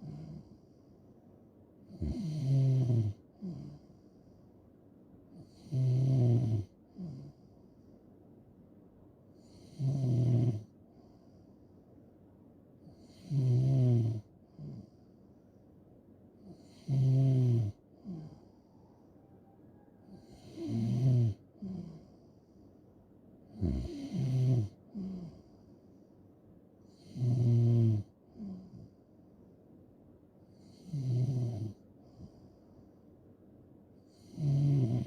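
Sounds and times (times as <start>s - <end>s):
person snoring loudly: 2.0s - 3.7s, 5.6s - 7.2s, 9.5s - 10.6s, 13.1s - 14.2s, 16.6s - 18.3s, 20.2s - 22.0s, 23.6s - 25.3s, 34.2s - 35.0s.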